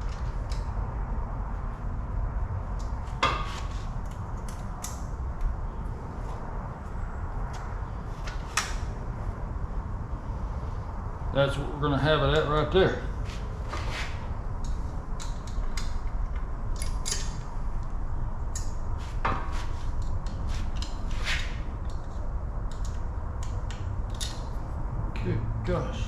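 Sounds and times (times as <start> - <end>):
steady low rumble: 0.0 - 26.0
allen key clicking on metal screws: 14.6 - 17.4.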